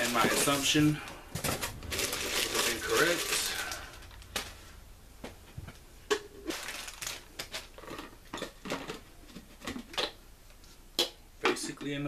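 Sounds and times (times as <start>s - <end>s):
packaging rustling and crinkling: 0.0s - 4.8s, 5.7s - 10.0s.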